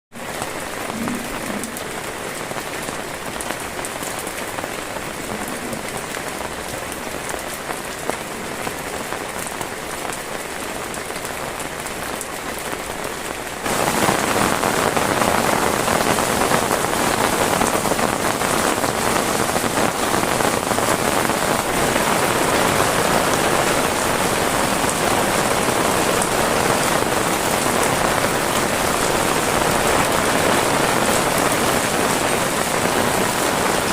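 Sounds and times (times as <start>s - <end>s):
rain falling: 0.1s - 33.9s.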